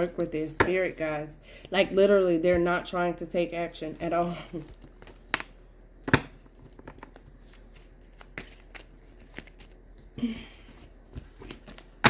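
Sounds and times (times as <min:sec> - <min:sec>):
cards being shuffled: 0:04.6 - 0:10.1, 0:10.9 - 0:12.0.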